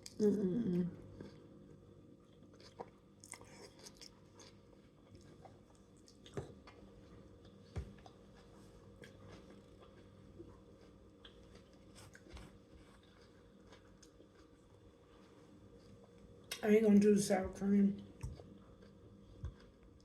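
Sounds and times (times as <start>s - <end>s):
soft chewing: 0.0s - 16.6s, 18.0s - 20.0s
person humming: 0.1s - 1.0s.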